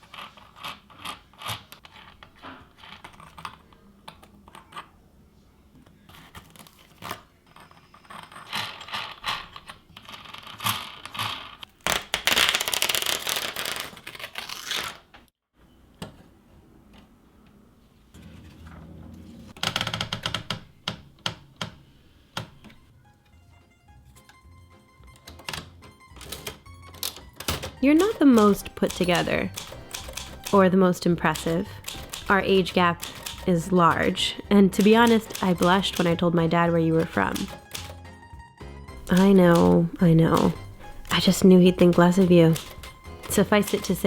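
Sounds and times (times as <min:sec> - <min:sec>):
typewriter key clacks: 0:26.2 - 0:30.7, 0:31.3 - 0:34.2, 0:34.8 - 0:36.2, 0:36.9 - 0:38.0, 0:39.0 - 0:44.0.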